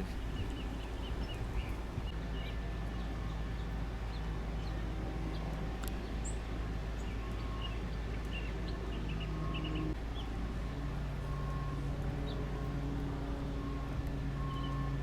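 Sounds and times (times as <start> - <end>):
bird chirps: 0.0 - 10.4, 14.4 - 15.0
engine-like hum: 0.0 - 15.0
steady low rumble: 0.0 - 15.0.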